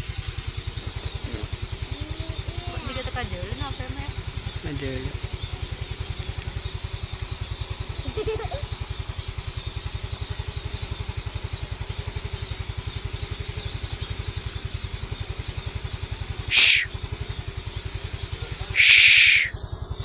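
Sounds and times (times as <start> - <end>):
bird chirps: 0.0 - 20.0
small engine idling: 0.0 - 20.0
person speaking: 18.7 - 19.5.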